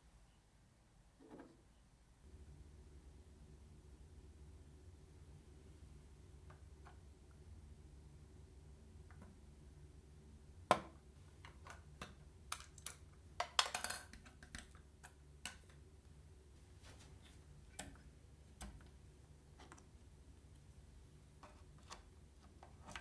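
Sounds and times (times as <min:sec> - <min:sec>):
hardware parts clicking and knocking: 0:10.7 - 0:14.8.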